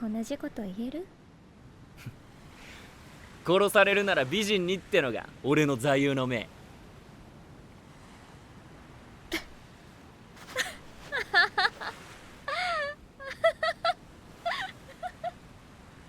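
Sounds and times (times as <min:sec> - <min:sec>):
young woman giggling: 0:09.3 - 0:09.6, 0:10.4 - 0:15.4.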